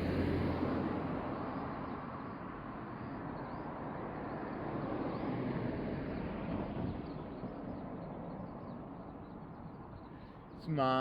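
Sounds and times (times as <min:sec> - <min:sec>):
outdoor background rumble: 0:00.0 - 0:11.0.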